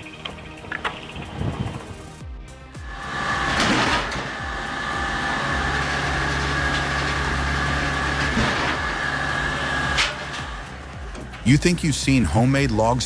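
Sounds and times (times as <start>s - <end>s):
firewood machine motor whine: 2.8s - 11.8s.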